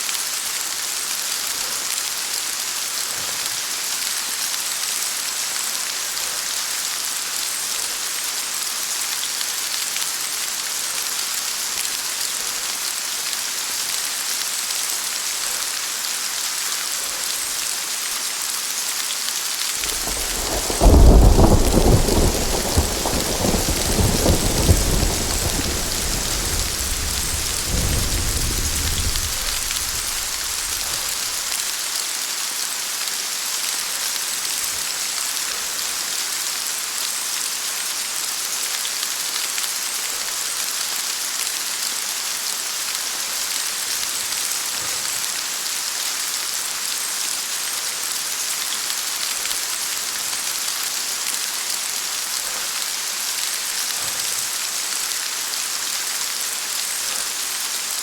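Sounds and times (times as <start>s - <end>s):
heavy rain falling: 0.1s - 58.0s
thunder rumbling: 19.8s - 31.4s.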